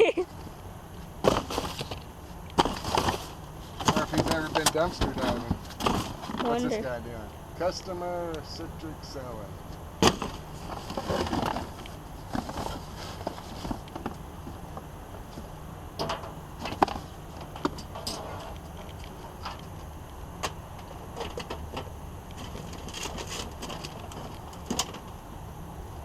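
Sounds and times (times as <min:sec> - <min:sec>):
low steady rumble: 0:00.0 - 0:26.0
junk clattering in a dumpster: 0:01.2 - 0:02.0, 0:02.6 - 0:06.6, 0:10.0 - 0:14.2.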